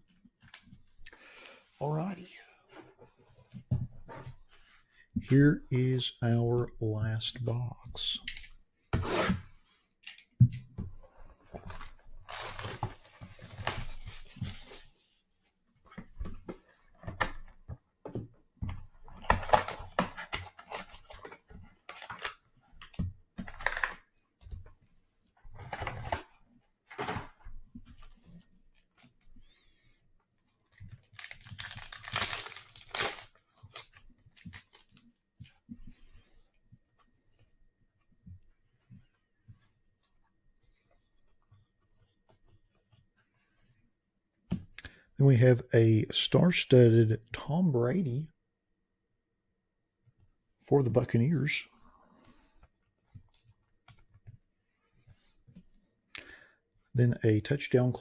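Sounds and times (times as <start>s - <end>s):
plastic and foil packs tearing: 12.3s - 12.8s, 31.1s - 35.0s.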